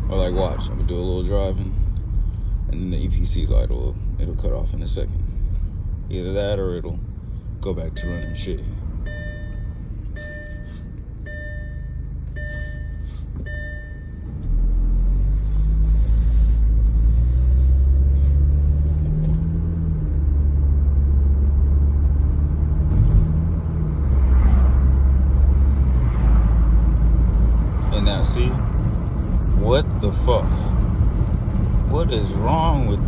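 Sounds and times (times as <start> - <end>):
car engine droning under load: 0.0 - 33.0
car warning chime dinging: 7.9 - 14.4.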